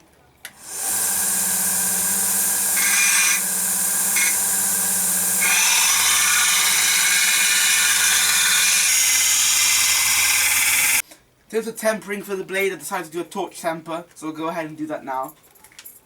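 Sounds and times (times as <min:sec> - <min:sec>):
machine hum with hiss: 0:00.6 - 0:11.0.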